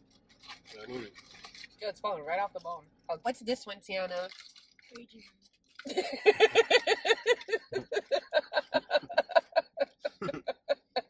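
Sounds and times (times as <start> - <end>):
person laughing hard: 5.9 - 11.0.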